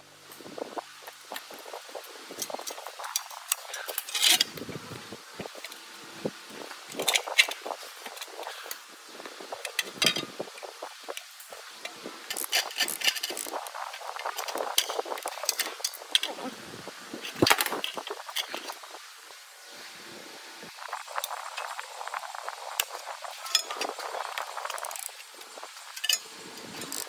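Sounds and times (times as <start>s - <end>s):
clinks and scrapes on metal parts: 2.4s - 4.6s, 6.9s - 8.8s, 9.6s - 16.5s, 21.2s - 27.0s.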